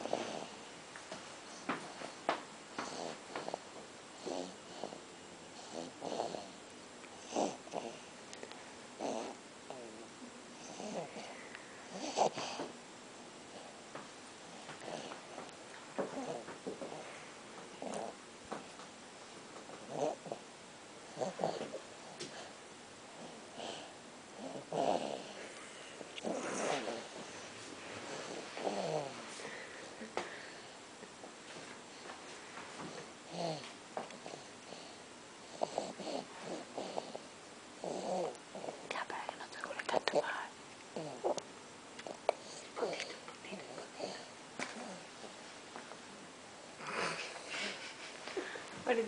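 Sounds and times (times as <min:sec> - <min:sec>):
snoring: 0:00.0 - 0:00.6, 0:02.8 - 0:05.0, 0:05.6 - 0:06.6, 0:07.2 - 0:08.0, 0:09.0 - 0:12.6, 0:14.5 - 0:15.2, 0:16.0 - 0:17.2, 0:17.8 - 0:18.2, 0:19.8 - 0:20.4, 0:21.1 - 0:22.5, 0:23.2 - 0:25.5, 0:26.2 - 0:27.4, 0:28.1 - 0:29.7, 0:32.9 - 0:38.8, 0:42.0 - 0:45.0, 0:46.8 - 0:47.8.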